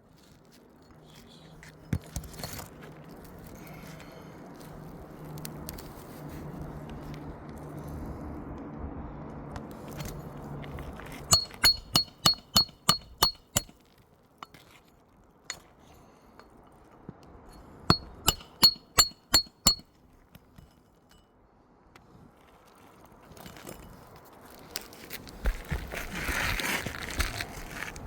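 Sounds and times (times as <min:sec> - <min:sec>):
hammer striking steel tool: 0:11.3 - 0:13.7, 0:17.9 - 0:19.8.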